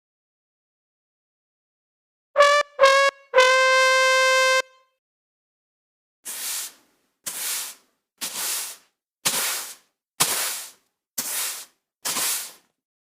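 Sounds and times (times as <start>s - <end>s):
short hissing bursts: 6.3s - 12.6s.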